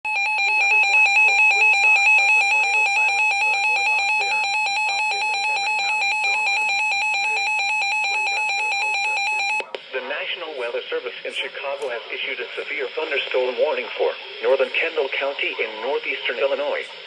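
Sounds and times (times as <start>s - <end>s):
steady electronic alarm tone: 0.0s - 9.7s.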